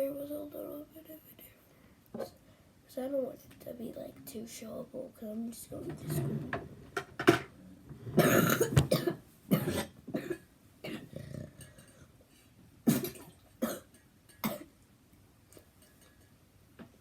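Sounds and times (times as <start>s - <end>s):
girl coughing: 8.2s - 11.1s, 12.9s - 14.7s.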